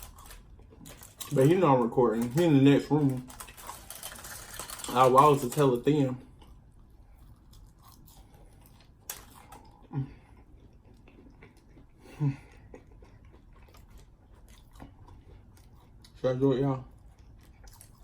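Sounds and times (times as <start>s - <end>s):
person chewing: 0.0s - 2.4s, 6.2s - 16.2s, 16.9s - 18.0s.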